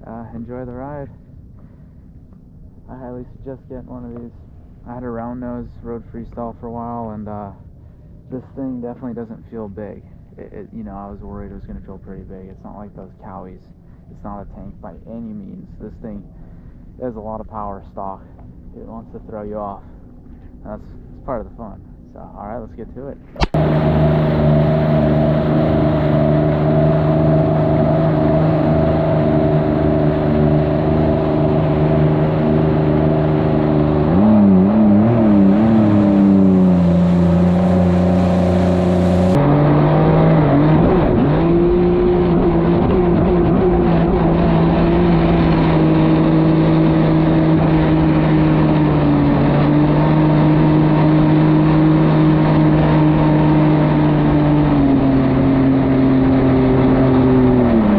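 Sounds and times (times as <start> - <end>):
jet ski engine running hard: 23.4 - 57.9.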